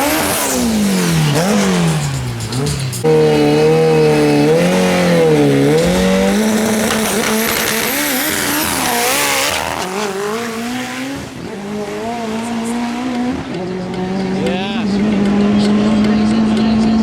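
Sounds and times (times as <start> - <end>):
car engine revving: 0.0 - 17.0.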